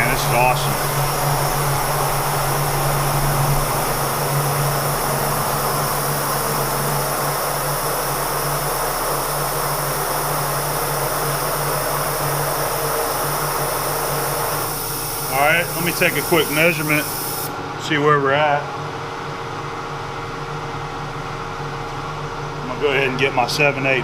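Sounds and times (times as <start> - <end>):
end mill cutting metal hiss: 0.0 - 17.5
milling machine humming: 0.0 - 17.6.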